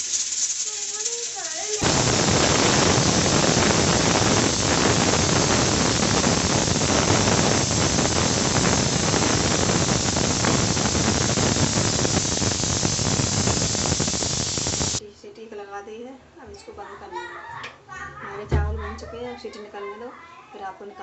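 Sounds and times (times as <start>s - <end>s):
pressure cooker whistle hissing: 0.0s - 15.0s.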